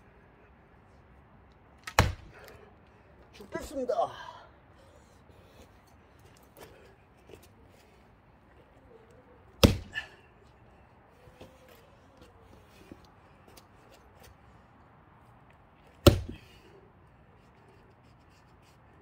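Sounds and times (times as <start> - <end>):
axe chopping log: 1.8 - 2.5, 9.6 - 10.2, 16.0 - 16.6.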